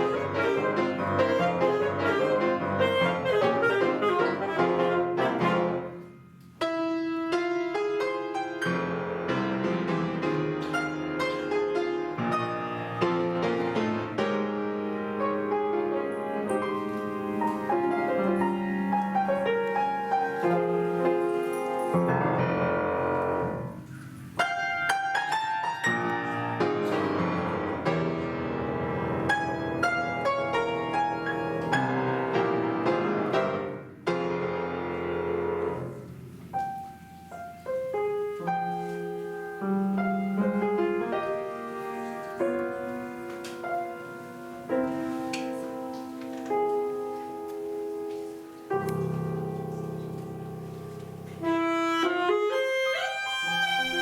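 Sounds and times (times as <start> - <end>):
instrumental ensemble playing: 0.0 - 6.5, 49.4 - 54.0
piano: 0.0 - 54.0.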